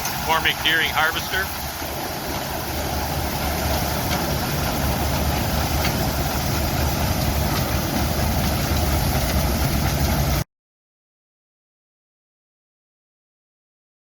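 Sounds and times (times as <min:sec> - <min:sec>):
harvester engine drone: 0:00.0 - 0:10.4.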